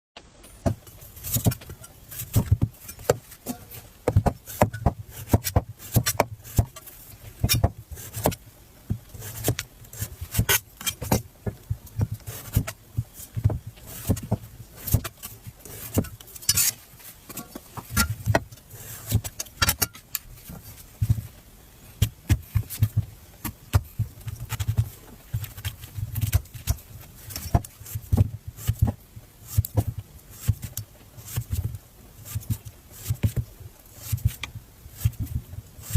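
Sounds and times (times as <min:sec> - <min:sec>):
knife cutting fruit: 0:00.7 - 0:08.4, 0:09.0 - 0:11.2, 0:11.9 - 0:20.7, 0:22.0 - 0:35.9.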